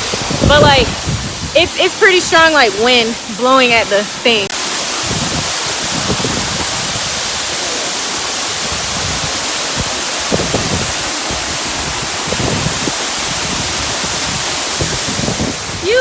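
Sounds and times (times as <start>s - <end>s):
waterfall rushing: 0.0s - 16.0s
wind gusting on microphone: 0.0s - 16.0s.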